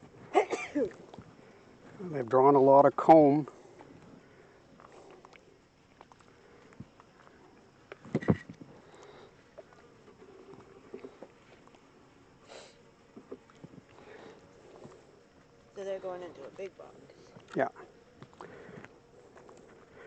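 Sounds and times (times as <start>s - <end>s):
bees buzzing: 8.1s - 20.0s.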